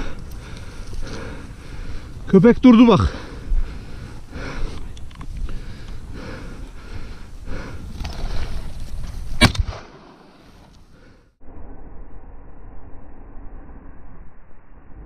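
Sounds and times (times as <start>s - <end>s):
shotgun shot: 9.4s - 10.2s.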